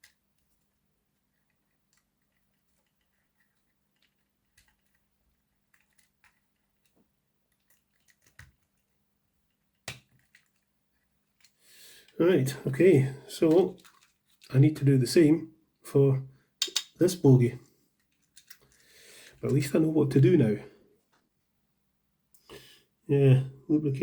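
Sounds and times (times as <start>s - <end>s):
clicks of plastic parts handled: 13.4s - 14.5s, 18.0s - 19.6s.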